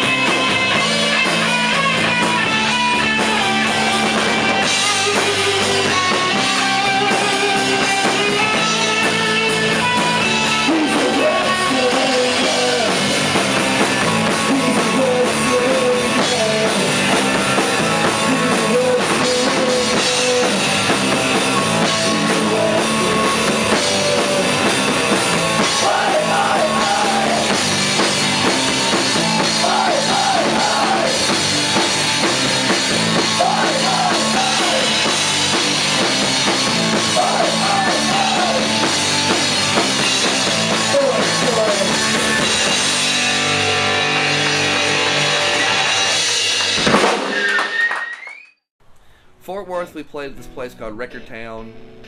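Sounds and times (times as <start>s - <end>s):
rock band playing: 0.0s - 47.9s.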